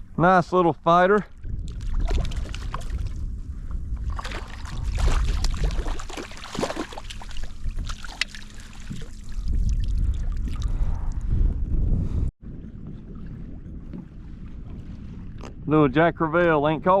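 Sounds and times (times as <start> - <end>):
wind rumbling on microphone: 0.0 - 17.0
water splashing and dripping: 1.4 - 3.2, 4.0 - 11.0.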